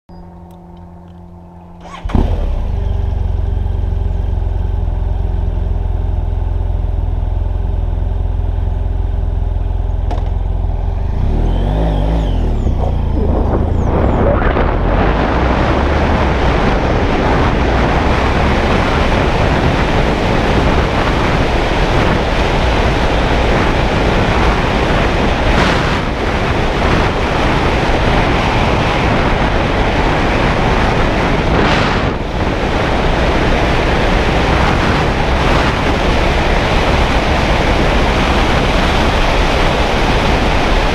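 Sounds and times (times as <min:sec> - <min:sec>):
motorcycle engine starting and idling: 0:00.1 - 0:15.0
motorcycle engine revving: 0:00.1 - 0:40.9
wind and road noise: 0:00.1 - 0:40.9.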